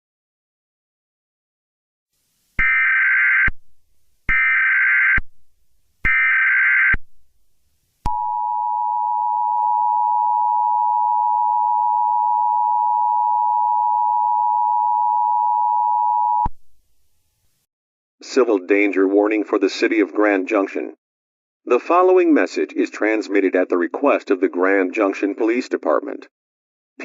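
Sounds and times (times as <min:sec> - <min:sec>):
two-tone attention signal: 0:08.1 - 0:16.5.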